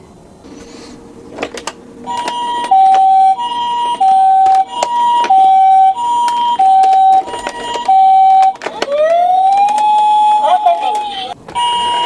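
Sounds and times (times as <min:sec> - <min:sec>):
sharp clicks: 0:01.3 - 0:10.2
toy ambulance two-tone siren: 0:01.5 - 0:12.0.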